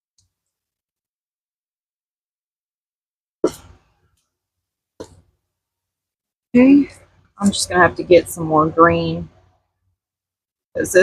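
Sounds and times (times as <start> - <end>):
person coughing: 3.4 - 3.8.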